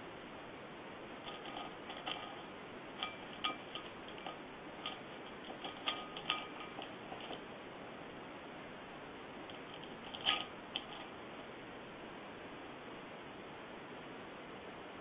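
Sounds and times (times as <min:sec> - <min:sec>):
small hard objects clinking: 0:01.2 - 0:07.6, 0:09.5 - 0:11.1.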